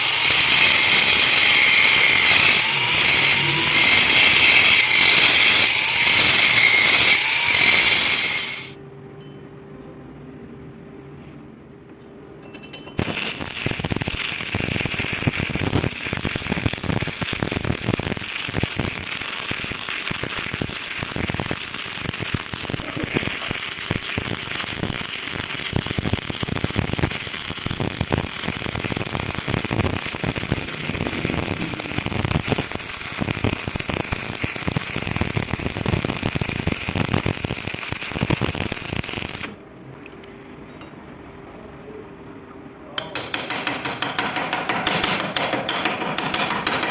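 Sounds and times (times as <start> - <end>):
welding arc crackling: 0.0 - 8.8, 13.0 - 39.6.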